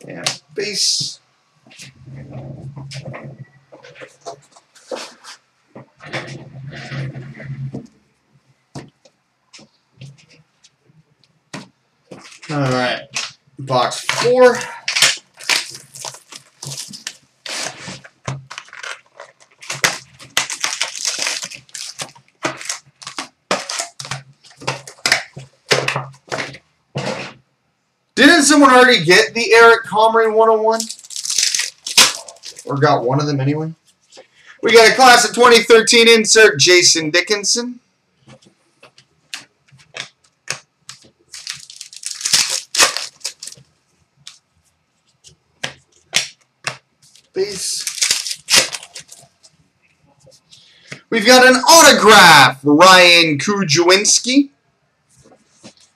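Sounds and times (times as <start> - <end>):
card packs tearing and crinkling: 12.2 - 25.8, 30.7 - 32.7, 40.0 - 43.7, 47.1 - 49.4.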